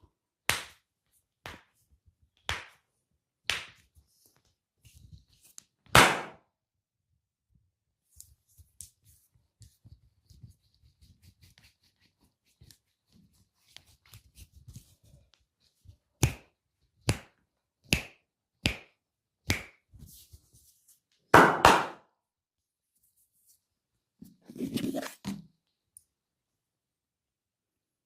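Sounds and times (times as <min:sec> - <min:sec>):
hand slaps on skin: 0:19.5 - 0:19.8.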